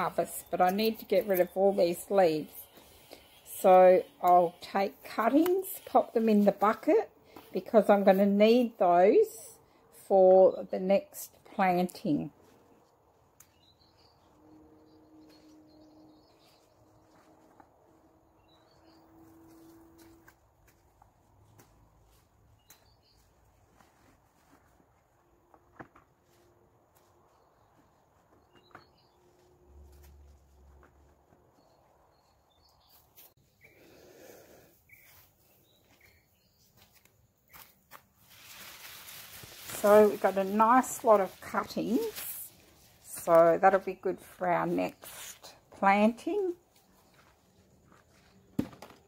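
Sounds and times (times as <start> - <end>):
soft rustle: 15.2 - 33.4, 34.9 - 45.8.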